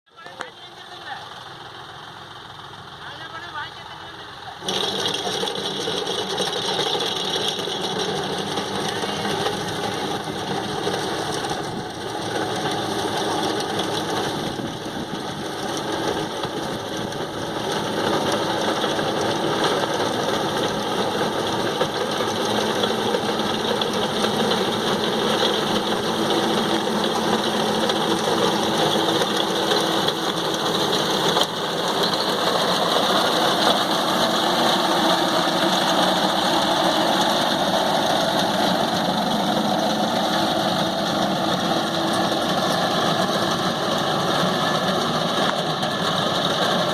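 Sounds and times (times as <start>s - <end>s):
harvesting machine engine running: 0.2s - 46.9s.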